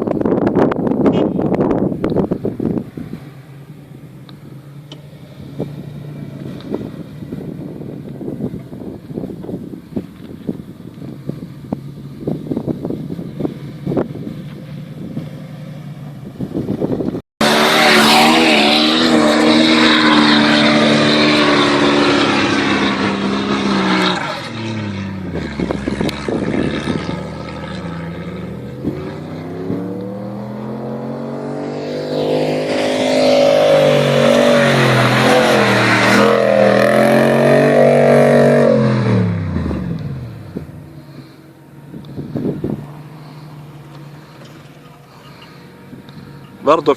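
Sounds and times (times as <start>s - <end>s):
wind: 0.0s - 46.9s
off-road engine revving hard: 12.2s - 46.9s.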